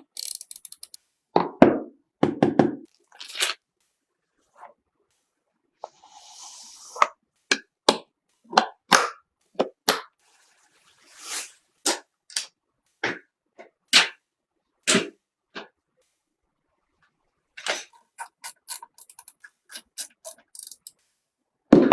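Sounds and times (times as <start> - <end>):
computer parts clicking and knocking: 0.0 - 1.5, 18.2 - 21.0
short sliding hiss: 5.1 - 7.2, 10.2 - 12.1.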